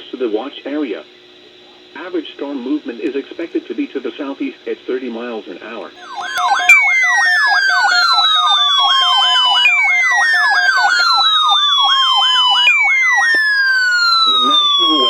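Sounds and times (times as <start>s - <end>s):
electronic siren yelp: 6.0s - 15.0s
falling siren wail: 6.0s - 15.0s.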